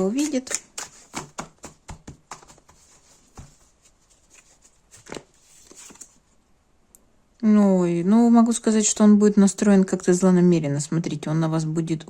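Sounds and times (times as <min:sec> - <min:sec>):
cards being shuffled and laid down: 0:00.2 - 0:06.2.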